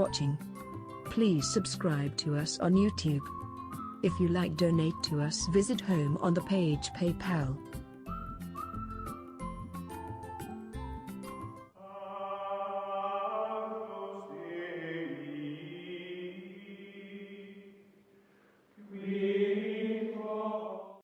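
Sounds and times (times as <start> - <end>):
held choral chords: 11.8 - 17.9, 18.8 - 21.0.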